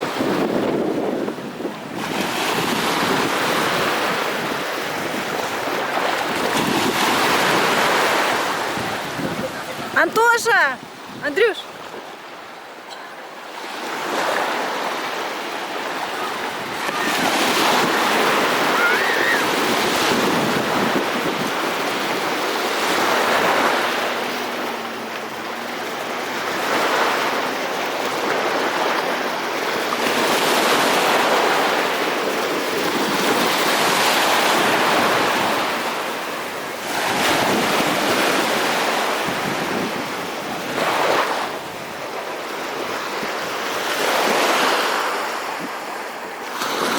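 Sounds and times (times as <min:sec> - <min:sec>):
wind rumbling on microphone: 0:00.0 - 0:10.0, 0:10.8 - 0:12.1, 0:15.7 - 0:35.8, 0:36.7 - 0:42.2
waves washing in: 0:00.0 - 0:46.9.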